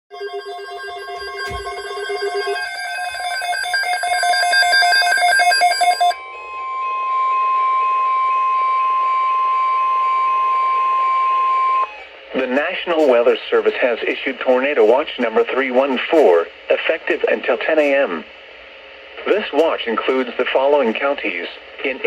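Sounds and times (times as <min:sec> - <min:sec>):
rapidly pulsing electronic beeping: 0:00.1 - 0:06.3
steady warning alarm tone: 0:00.1 - 0:12.1
radio static: 0:01.2 - 0:03.2, 0:12.3 - 0:18.3, 0:19.0 - 0:22.0
faint radio hiss: 0:11.9 - 0:22.0.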